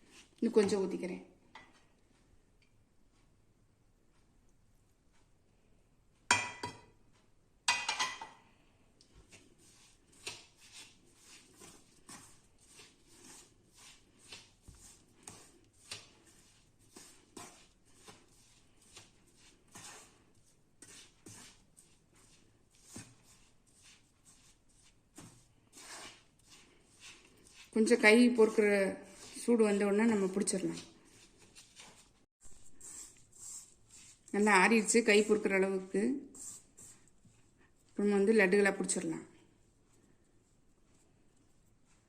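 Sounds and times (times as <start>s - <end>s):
stirring and scraping in metal bowl: 7.7s - 8.4s, 9.0s - 37.6s.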